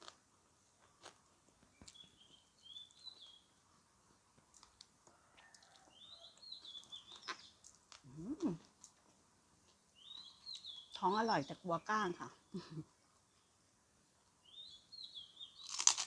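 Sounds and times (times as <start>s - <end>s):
small bird chirping: 1.6s - 3.5s, 5.4s - 8.6s, 9.7s - 13.5s, 14.4s - 16.0s.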